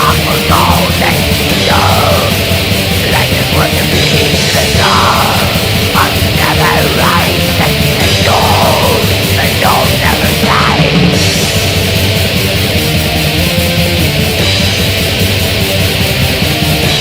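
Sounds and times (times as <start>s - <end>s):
harsh shouted vocals: 0.0s - 11.8s
heavy metal band playing: 0.0s - 17.0s.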